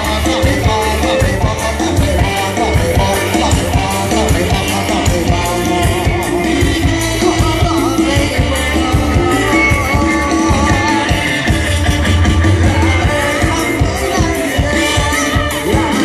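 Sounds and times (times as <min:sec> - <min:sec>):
band playing: 0:00.0 - 0:16.0
steady drum beat: 0:00.0 - 0:16.0
wavering melody line: 0:07.1 - 0:15.4.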